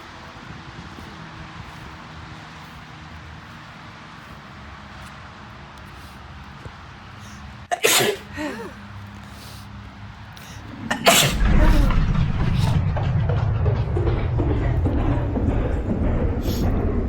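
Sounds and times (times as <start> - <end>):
steady low hum: 10.4 - 17.0.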